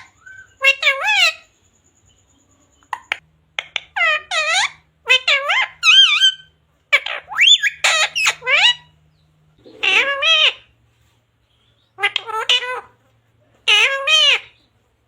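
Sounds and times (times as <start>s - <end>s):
parrot chattering: 0.0s - 1.5s, 2.8s - 9.0s, 9.6s - 10.8s, 11.9s - 13.0s, 13.6s - 14.6s.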